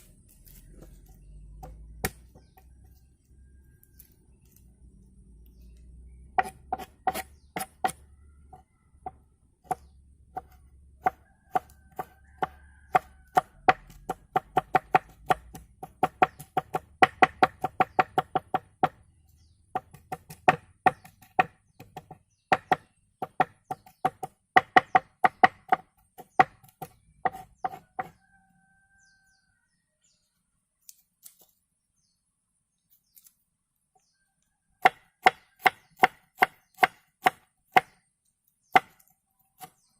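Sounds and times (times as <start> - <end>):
knife chopping on wooden board: 6.4 - 8.0, 9.0 - 19.0, 19.7 - 28.2, 34.8 - 38.0, 38.7 - 39.9.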